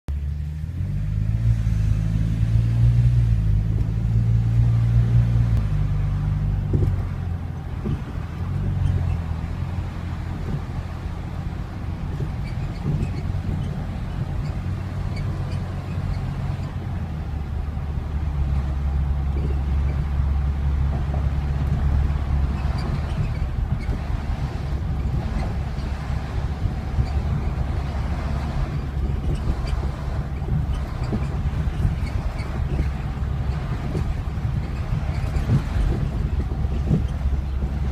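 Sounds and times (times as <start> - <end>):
car engine and road rumble: 0.0 - 37.9
suspension knocks: 2.0 - 37.9.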